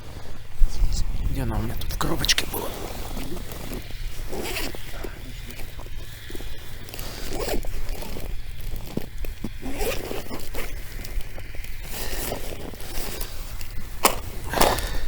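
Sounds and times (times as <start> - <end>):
gear clicking: 1.4 - 15.0
rummaging in a tackle box: 1.8 - 15.0.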